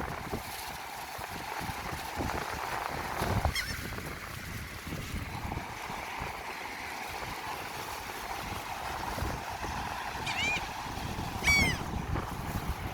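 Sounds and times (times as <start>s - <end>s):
seagull call: 3.5s - 3.8s, 10.2s - 10.8s, 11.4s - 11.9s.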